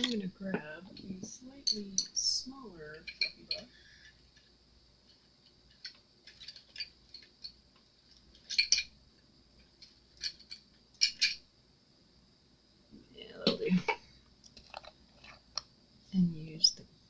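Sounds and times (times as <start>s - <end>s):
small clicks and light taps: 3.1s - 8.9s.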